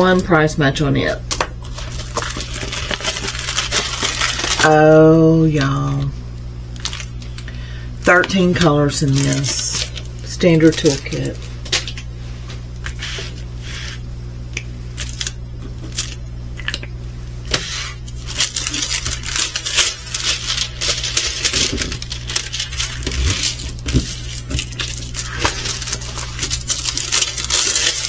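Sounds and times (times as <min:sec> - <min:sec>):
low electrical hum: 0:00.0 - 0:28.0
plastic packaging crinkling: 0:01.0 - 0:14.0, 0:15.0 - 0:16.8, 0:17.4 - 0:28.0
small bags of beads rattling: 0:01.8 - 0:04.8, 0:09.0 - 0:11.4, 0:18.2 - 0:28.0.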